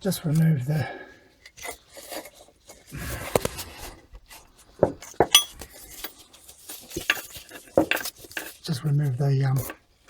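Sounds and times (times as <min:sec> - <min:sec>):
metal tools clinking: 0:05.2 - 0:06.2.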